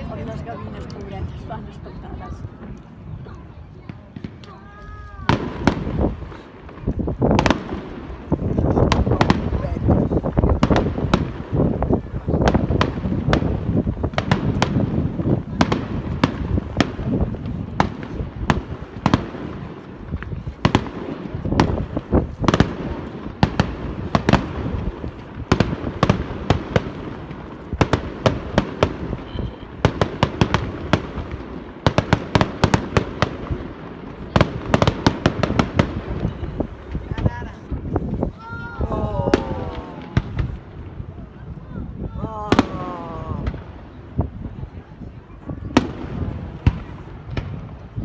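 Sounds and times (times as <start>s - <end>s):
fireworks cracks and bangs: 0.0s - 44.8s, 45.4s - 48.0s.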